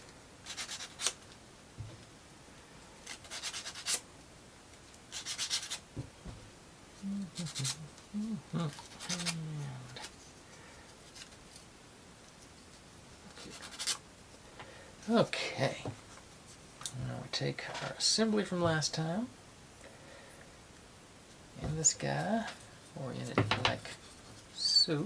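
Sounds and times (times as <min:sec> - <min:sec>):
person mumbling: 0:07.0 - 0:10.0
wooden pieces clicking and scraping: 0:08.6 - 0:10.2.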